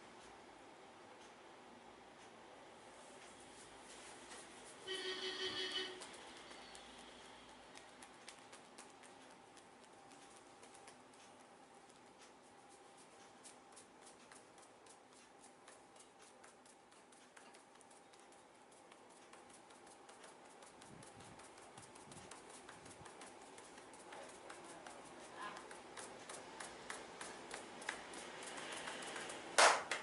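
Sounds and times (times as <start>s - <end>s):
faint steady hum: 0.0s - 30.0s
quick clicks and taps: 6.0s - 12.4s, 13.7s - 30.0s.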